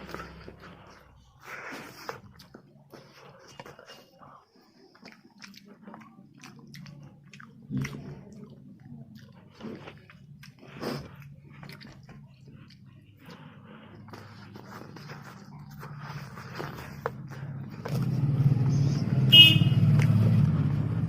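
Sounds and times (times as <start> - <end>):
crunchy chewing and biting: 4.8 - 19.0.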